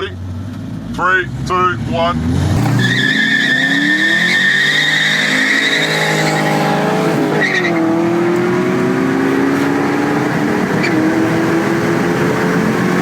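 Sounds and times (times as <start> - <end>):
car engine revving: 0.2 - 13.0
tyres squealing: 2.6 - 7.9.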